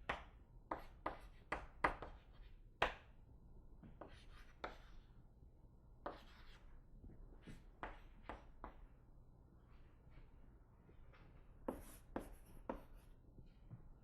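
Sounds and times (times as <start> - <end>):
chalk tapping on board: 0.1 - 3.1, 11.7 - 13.1
chalk scratching on board: 0.7 - 2.5, 4.0 - 5.0, 6.1 - 6.6, 11.7 - 13.1.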